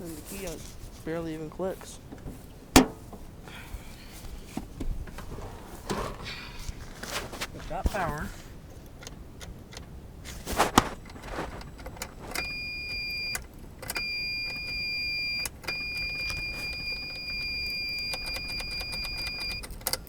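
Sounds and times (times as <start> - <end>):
ignition key clicks: 2.1 - 3.2, 8.8 - 20.0
car warning buzzer: 10.8 - 19.8.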